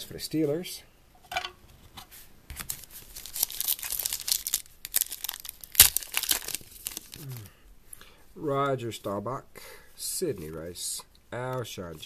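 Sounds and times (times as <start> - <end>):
plastic wrapper crinkling and tearing: 2.5 - 7.5.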